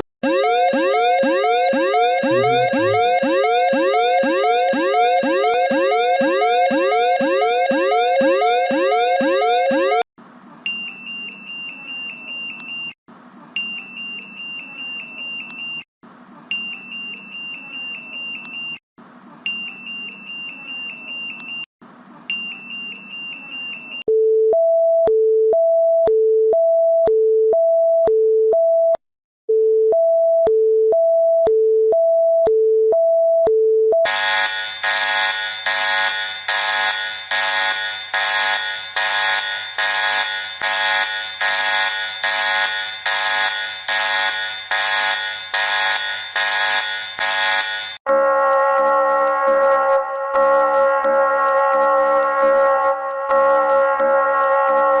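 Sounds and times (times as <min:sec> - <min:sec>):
two-tone alarm: 0:00.2 - 0:10.0, 0:34.0 - 0:48.8
harsh buzzing alarm: 0:00.3 - 0:10.0, 0:34.0 - 0:48.0
high steady alarm beeps: 0:01.0 - 0:09.6, 0:34.1 - 0:48.0.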